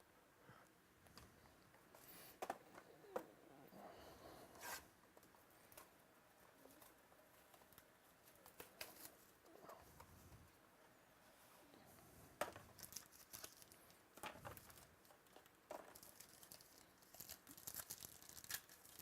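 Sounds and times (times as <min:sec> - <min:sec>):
card packaging rustling: 0:12.5 - 0:19.0.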